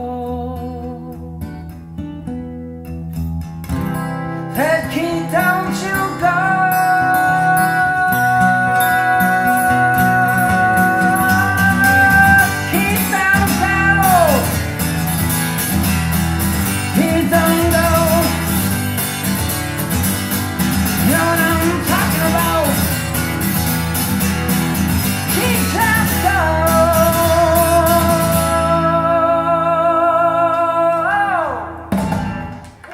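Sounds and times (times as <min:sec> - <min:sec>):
bass: 0:00.0 - 0:32.9
guitar with bending notes: 0:00.0 - 0:32.9
drums: 0:31.8 - 0:32.9.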